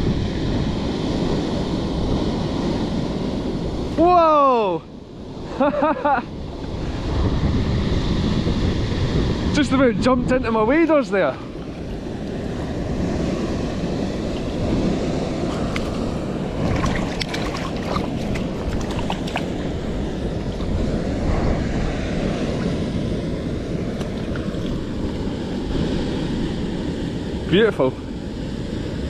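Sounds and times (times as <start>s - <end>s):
running river water: 10.6s - 27.8s.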